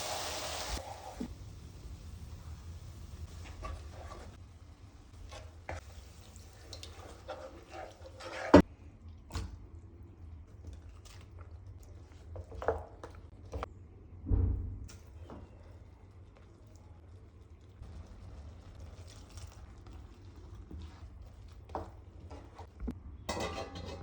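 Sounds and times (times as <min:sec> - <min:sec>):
low hum: 0:13.7 - 0:15.2
cookware knocking and clinking: 0:23.3 - 0:24.0.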